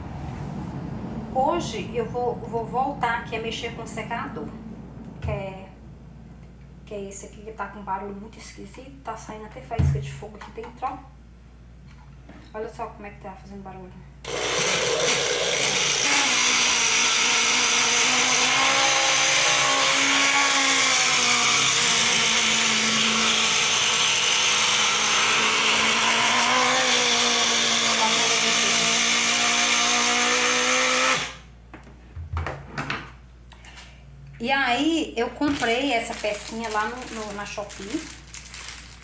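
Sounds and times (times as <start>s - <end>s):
hair dryer running: 21.4s - 31.4s.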